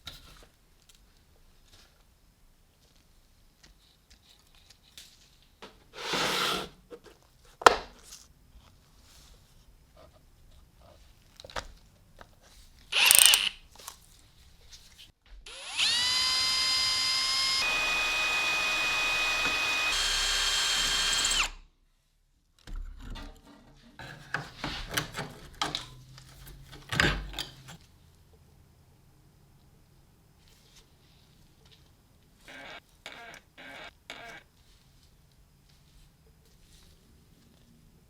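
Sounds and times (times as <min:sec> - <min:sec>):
power drill spinning: 0:12.9 - 0:13.6, 0:15.5 - 0:21.6, 0:32.5 - 0:34.4.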